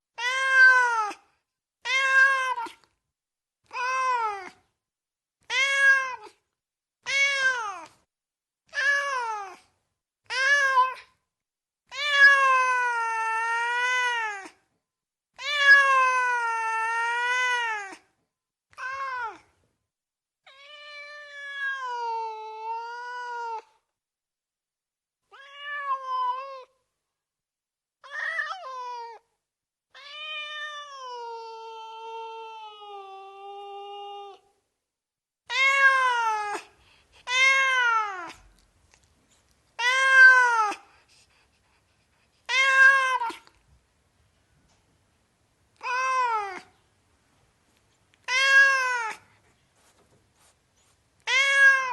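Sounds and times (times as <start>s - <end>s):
cat meowing: 0.2s - 1.2s, 1.8s - 2.8s, 3.7s - 4.6s, 5.4s - 6.4s, 7.0s - 7.9s, 10.3s - 11.1s, 11.9s - 14.5s, 15.4s - 18.0s, 18.7s - 19.5s, 20.4s - 23.7s, 25.3s - 26.7s, 28.0s - 29.2s, 29.9s - 34.4s, 35.5s - 38.6s, 39.8s - 40.8s, 42.4s - 43.6s, 45.8s - 46.7s, 48.2s - 49.2s, 51.2s - 51.9s.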